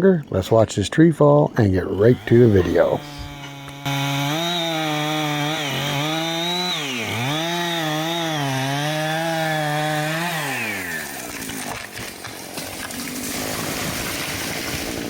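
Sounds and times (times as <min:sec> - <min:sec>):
chainsaw cutting into tree: 0:01.9 - 0:12.9.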